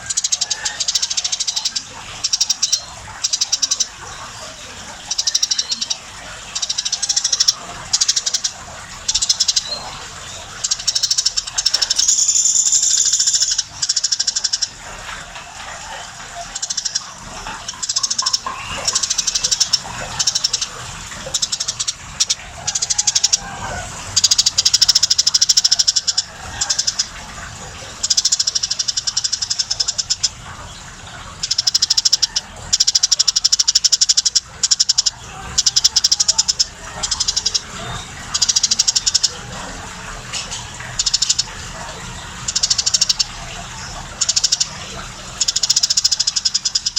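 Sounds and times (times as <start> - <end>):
sparrow chirping: 5.0 - 10.0, 10.6 - 14.8, 16.6 - 20.7.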